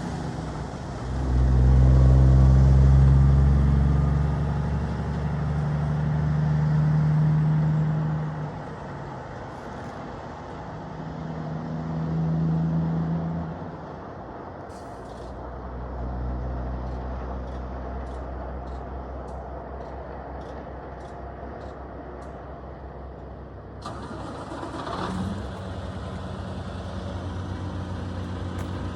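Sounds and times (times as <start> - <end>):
diesel truck engine running: 13.9 - 28.9.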